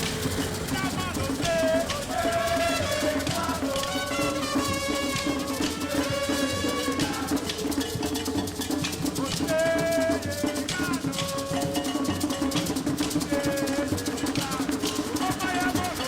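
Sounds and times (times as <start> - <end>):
held melodic notes: 0.0 - 16.0
steady percussion beat: 0.0 - 16.0.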